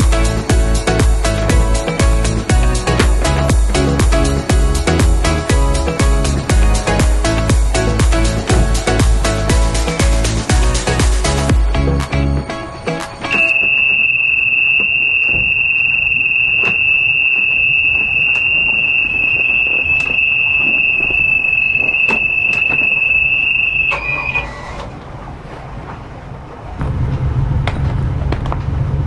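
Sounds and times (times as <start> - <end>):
high-pitched warning buzzer: 13.3 - 24.5.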